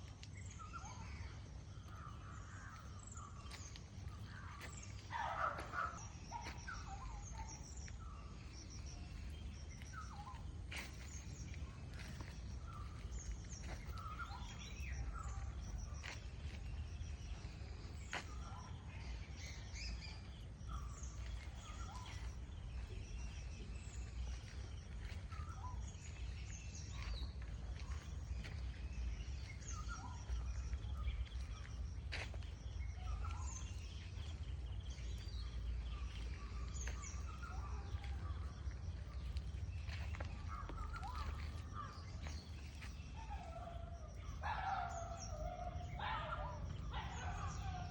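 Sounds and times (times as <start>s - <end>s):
birds chirping: 0.0s - 47.9s.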